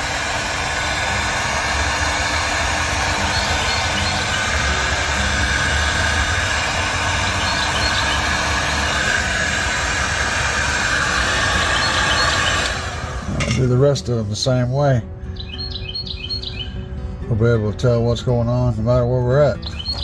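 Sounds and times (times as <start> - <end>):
heat gun blowing: 0.0 - 14.3.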